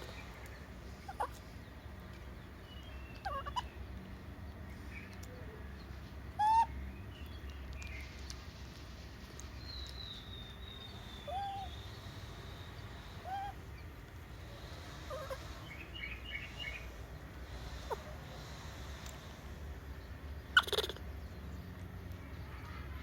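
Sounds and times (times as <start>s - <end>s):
steady low hum: 0.0s - 22.6s
animal chirps: 2.9s - 3.8s, 6.4s - 6.7s, 10.0s - 12.0s, 13.0s - 13.6s, 15.0s - 16.9s, 20.5s - 21.0s
animal hoots: 20.6s - 21.0s.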